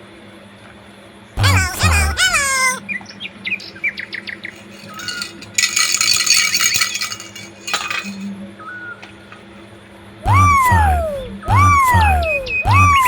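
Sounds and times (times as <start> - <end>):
short rising chirps: 10.3 - 13.0
swooping falling whistle tones: 10.3 - 13.0.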